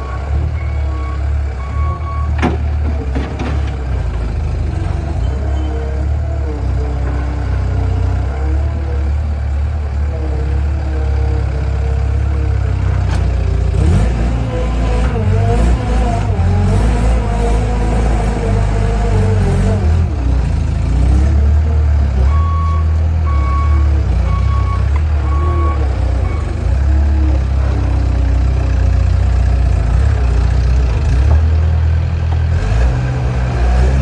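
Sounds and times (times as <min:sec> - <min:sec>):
reversing alarm beeps: 0:00.0 - 0:02.4, 0:22.2 - 0:26.6
loader engine running: 0:00.0 - 0:34.0.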